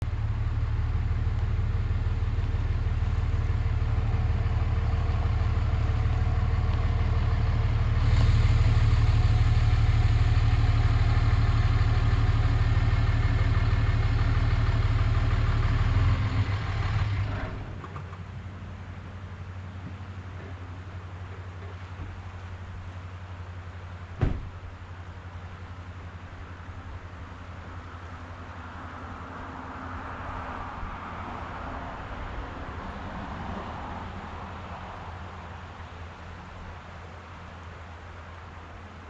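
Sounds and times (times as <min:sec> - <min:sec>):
vehicle engine running: 0:00.0 - 0:29.7.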